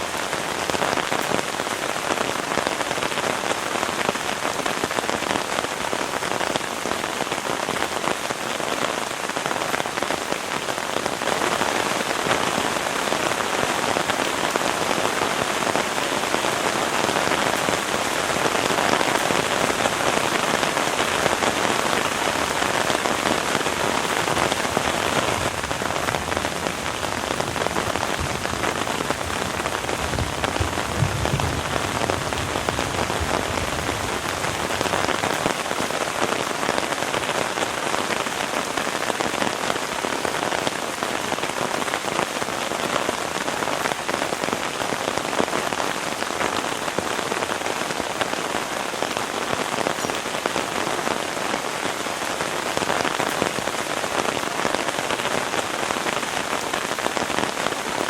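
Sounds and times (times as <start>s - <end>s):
heavy rain falling: 0.0s - 58.0s
soft low thumps: 25.5s - 34.5s.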